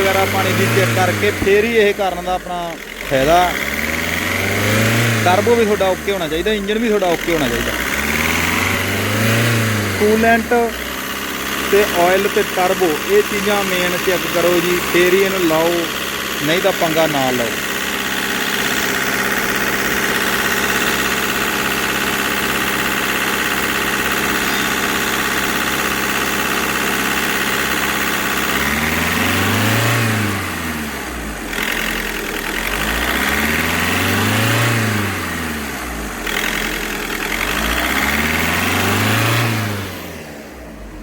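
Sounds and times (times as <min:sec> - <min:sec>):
diesel engine revs surging: 0:00.0 - 0:41.0.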